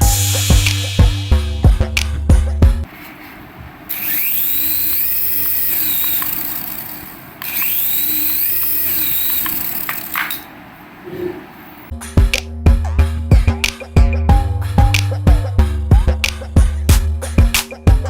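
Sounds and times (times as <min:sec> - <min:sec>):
toy motor whirring whine: 0:03.9 - 0:10.5.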